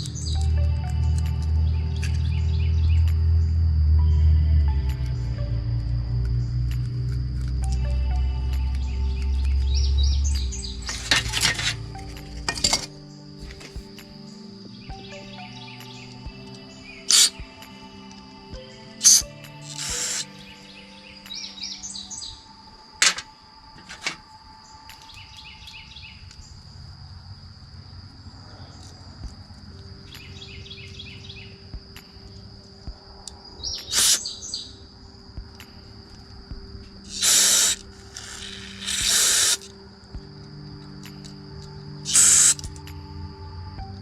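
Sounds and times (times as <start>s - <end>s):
birds chirping: 0.0s - 5.6s, 6.2s - 42.9s
steady high tone: 0.0s - 26.3s
loud hissing bursts: 19.0s - 20.3s, 33.9s - 34.3s, 37.1s - 39.7s, 42.1s - 42.6s
sharp clicks: 19.0s - 20.4s, 33.2s - 34.4s, 37.1s - 39.8s, 41.0s - 43.0s.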